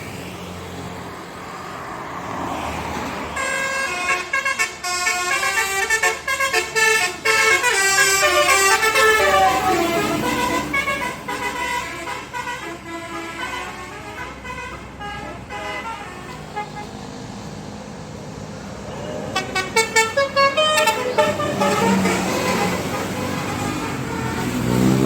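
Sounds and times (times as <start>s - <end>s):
traffic: 0.0s - 25.0s
multi-tone bus horn tune: 3.3s - 17.1s, 18.8s - 25.0s.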